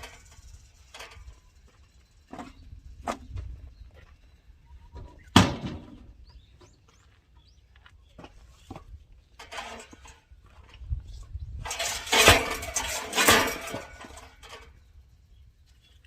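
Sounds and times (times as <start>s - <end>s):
faint bird chirps: 3.6s - 5.3s
wood scraping rustle: 8.1s - 14.8s.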